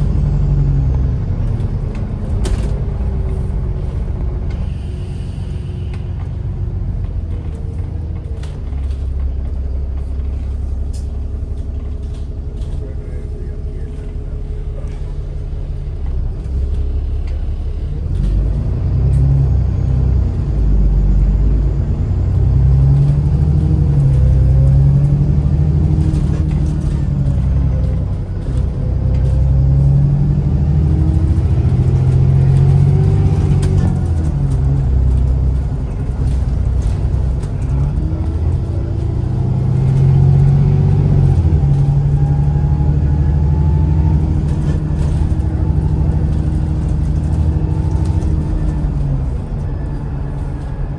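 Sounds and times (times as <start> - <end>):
bus diesel engine accelerating: 0.0 - 50.9.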